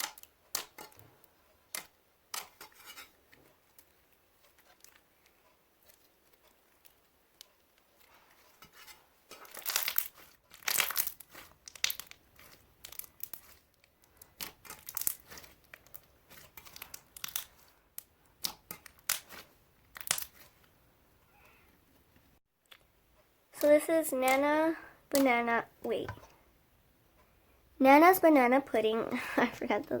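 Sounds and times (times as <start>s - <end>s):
plastic packaging crinkling and tearing: 8.7s - 17.8s, 18.7s - 20.5s.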